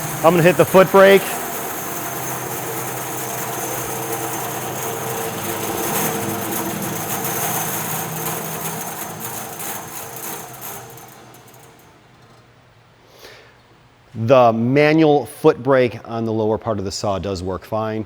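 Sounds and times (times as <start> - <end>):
bandsaw coasting down: 0.0 - 12.6.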